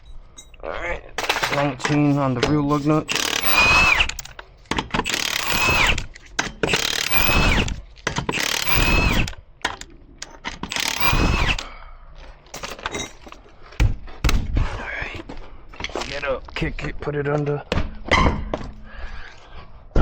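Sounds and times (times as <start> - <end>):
impact wrench whining: 3.0 - 11.7.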